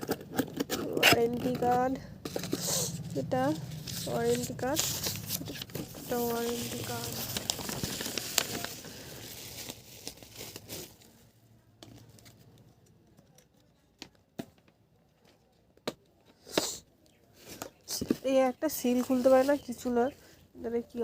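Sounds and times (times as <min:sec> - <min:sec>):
paper and plastic crinkling: 0:03.6 - 0:11.2.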